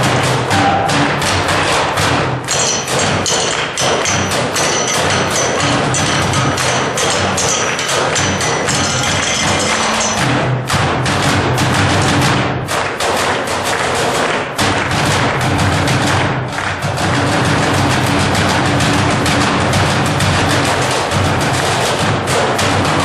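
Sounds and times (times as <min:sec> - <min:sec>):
fast drumming: 0:00.0 - 0:23.0.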